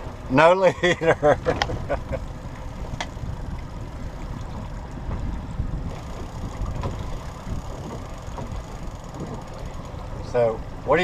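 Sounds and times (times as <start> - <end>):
water wash: 0.0 - 11.0
wind buffeting microphone: 0.0 - 11.0.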